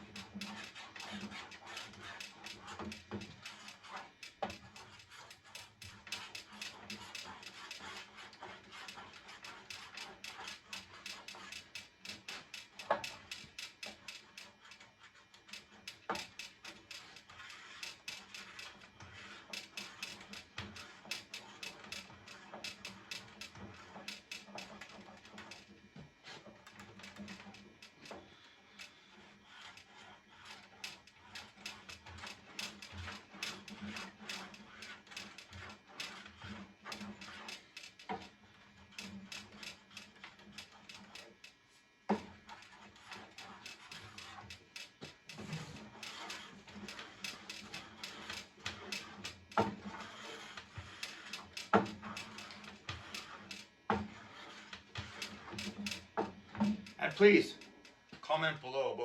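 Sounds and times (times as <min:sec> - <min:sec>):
wax rubbing on metal: 0:28.7 - 0:37.6, 0:42.4 - 0:57.6.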